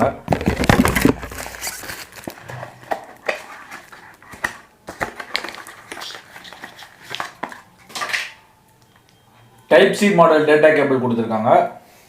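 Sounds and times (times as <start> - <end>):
cardboard and plastic rustling: 0.3 - 8.3.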